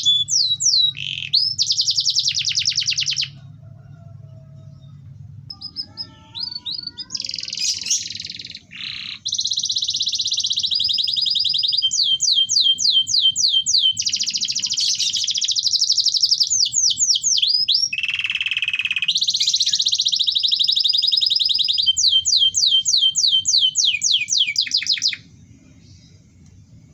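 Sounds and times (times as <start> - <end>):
canary singing trills: 0.0 - 26.8.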